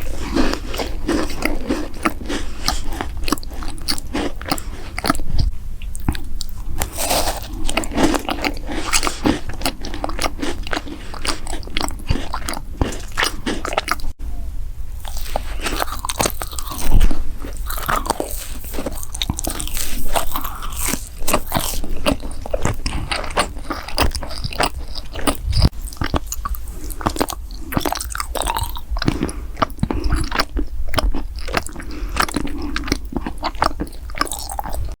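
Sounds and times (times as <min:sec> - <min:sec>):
crunchy snack chewing: 0:00.0 - 0:14.2, 0:15.0 - 0:35.0.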